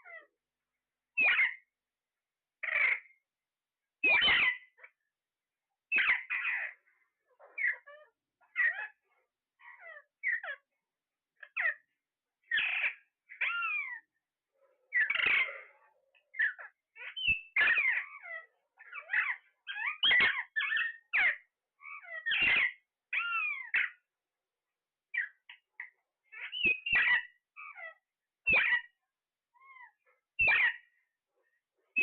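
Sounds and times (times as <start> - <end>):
parrots squawking and chirping: 0.0 - 0.3, 1.2 - 1.6, 2.6 - 3.2, 4.0 - 4.9, 5.9 - 10.6, 11.4 - 11.9, 12.5 - 14.1, 14.9 - 24.0, 25.1 - 29.0, 29.6 - 31.0.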